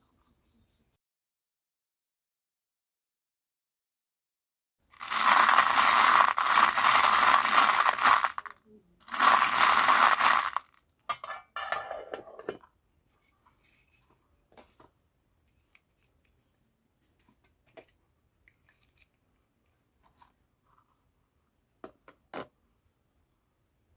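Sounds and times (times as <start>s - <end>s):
candy wrapper tearing and crinkling: 5.0s - 10.8s.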